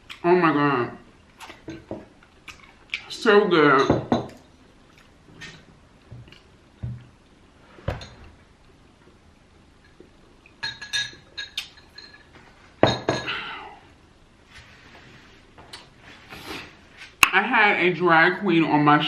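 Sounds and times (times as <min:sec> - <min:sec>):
tableware clinking and knocking: 0:03.7 - 0:04.4, 0:10.6 - 0:13.4.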